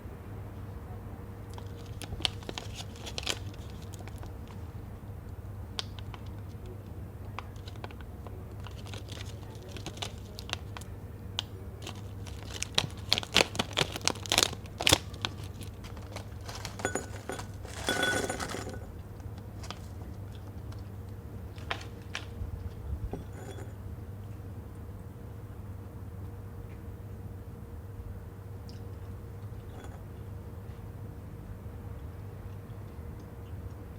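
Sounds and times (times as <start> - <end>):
snack packaging crinkling: 1.5 - 4.6, 7.4 - 22.4
wrapper tearing open: 1.6 - 4.3, 8.6 - 10.8, 11.8 - 17.9.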